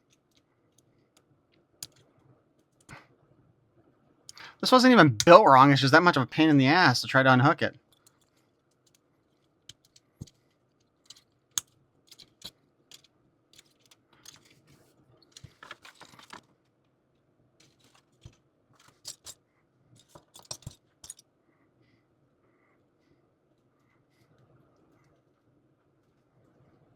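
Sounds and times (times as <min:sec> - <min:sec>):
plastic parts clicking: 0:01.2 - 0:02.1, 0:09.7 - 0:10.4, 0:11.0 - 0:14.6, 0:15.2 - 0:16.4, 0:17.6 - 0:19.4, 0:20.0 - 0:21.2
rustling handling: 0:12.1 - 0:16.5.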